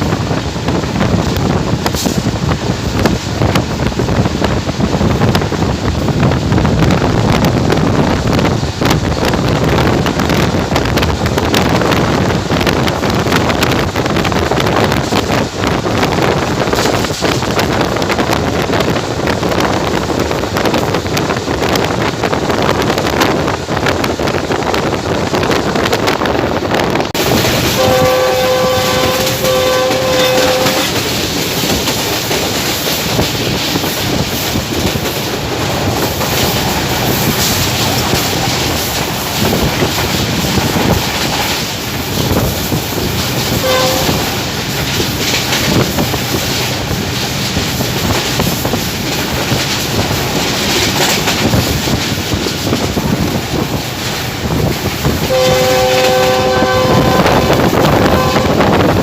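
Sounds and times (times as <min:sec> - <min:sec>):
train wheels on rails: 0:00.0 - 0:59.0
train horn blasts: 0:27.6 - 0:31.0, 0:43.5 - 0:44.4, 0:55.3 - 0:58.8.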